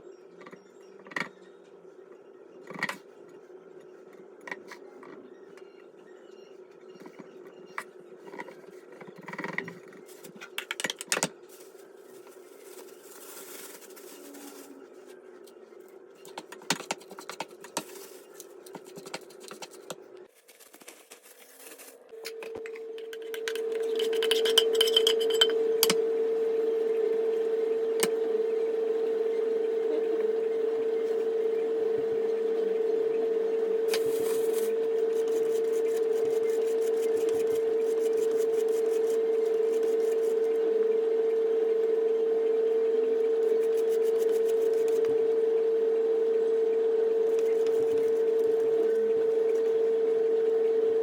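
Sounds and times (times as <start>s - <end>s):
motor hum: 22.0s - 51.0s
steady hum: 22.1s - 51.0s.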